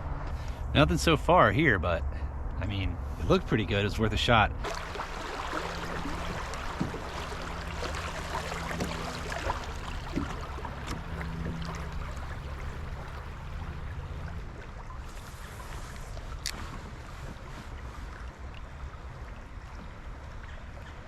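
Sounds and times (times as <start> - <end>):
flowing river water: 4.6 - 21.0.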